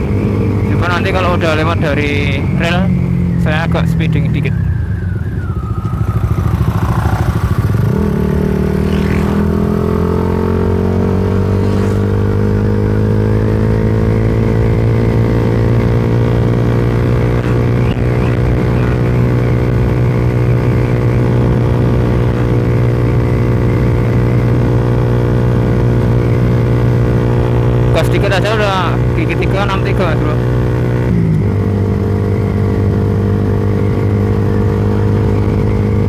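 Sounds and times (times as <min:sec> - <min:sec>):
motorcycle engine under throttle: 0:00.0 - 0:36.0.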